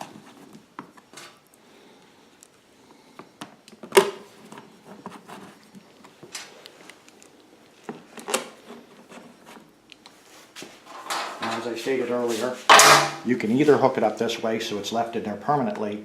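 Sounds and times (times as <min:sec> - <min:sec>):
sharp knock: 0:12.7 - 0:13.3.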